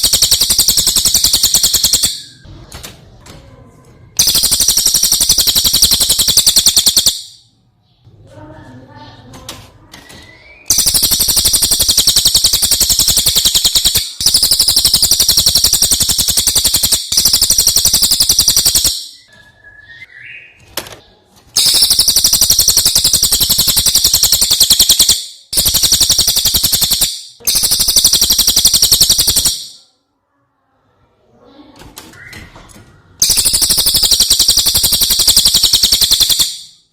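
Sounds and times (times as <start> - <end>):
songbird singing fast trills: 10.4 - 19.3.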